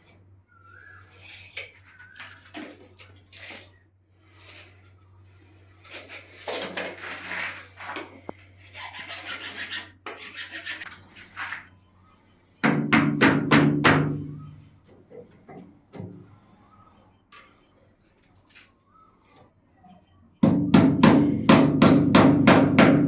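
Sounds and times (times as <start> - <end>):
scraping on plastic pipe: 5.8 - 11.7.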